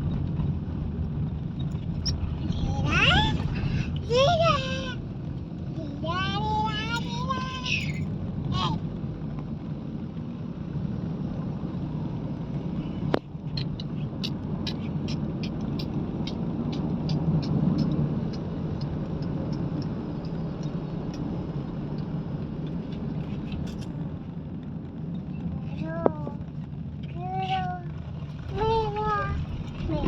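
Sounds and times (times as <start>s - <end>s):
low rumble: 0.0s - 30.0s
light ticks: 13.1s - 24.0s.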